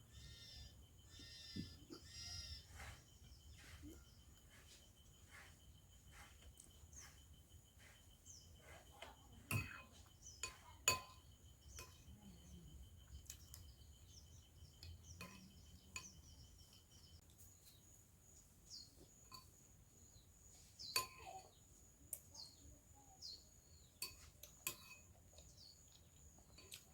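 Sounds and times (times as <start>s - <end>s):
bird chirps: 0.0s - 18.0s, 18.6s - 26.9s
high insect trill: 0.0s - 24.2s
cutlery clinking against dishes: 9.4s - 12.1s, 15.2s - 16.9s, 20.8s - 21.5s, 23.9s - 25.6s.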